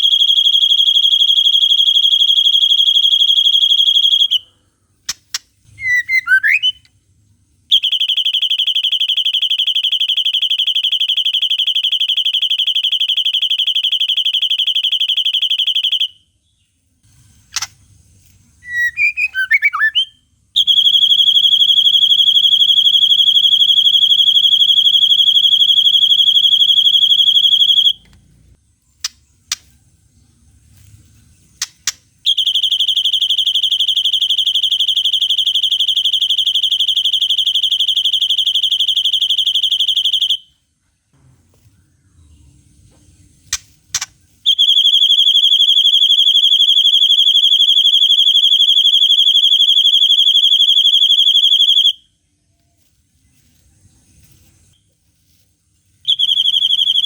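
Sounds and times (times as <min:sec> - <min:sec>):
bird high-pitched trill: 0:05.8 - 0:06.8, 0:18.6 - 0:28.0, 0:56.1 - 0:57.0
short sharp chirps: 0:17.0 - 0:18.0.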